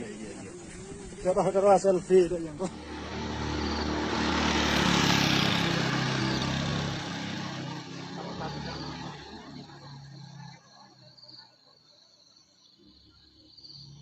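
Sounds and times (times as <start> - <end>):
motorcycle engine passing: 0.0 - 10.9.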